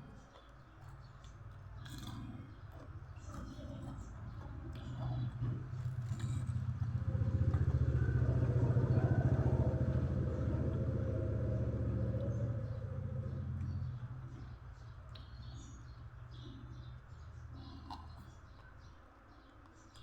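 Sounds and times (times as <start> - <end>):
vehicle engine passing by: 5.2 - 14.9.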